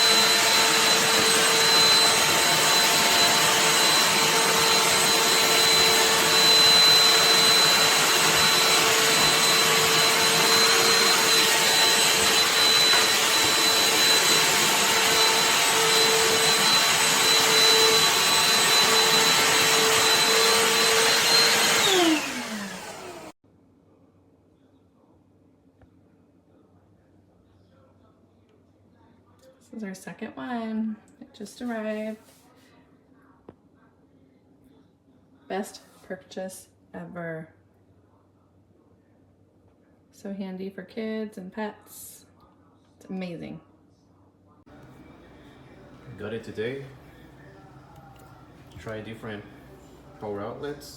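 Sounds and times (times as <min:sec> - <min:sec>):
handheld vacuum running: 0:00.0 - 0:23.4, 0:44.7 - 0:50.9
vacuum motor spinning down: 0:00.0 - 0:23.4.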